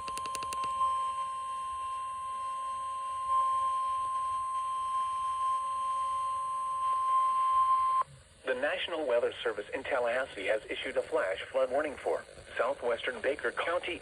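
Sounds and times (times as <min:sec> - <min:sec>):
steady high-pitched alarm tone: 0:00.0 - 0:08.0.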